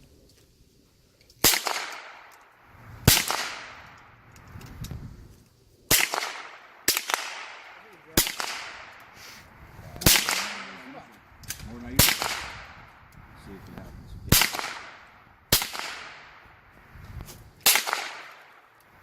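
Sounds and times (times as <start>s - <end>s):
gunshots echoing: 1.4s - 2.4s, 3.0s - 4.3s, 5.9s - 9.2s, 9.9s - 13.1s, 14.3s - 16.7s, 17.6s - 18.8s.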